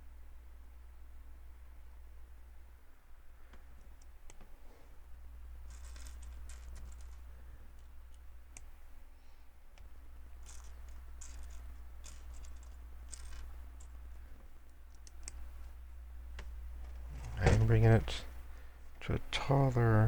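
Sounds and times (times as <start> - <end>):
steady low hum: 0.0 - 20.0
plastic bricks clicking and clattering: 5.7 - 8.2, 10.4 - 13.9.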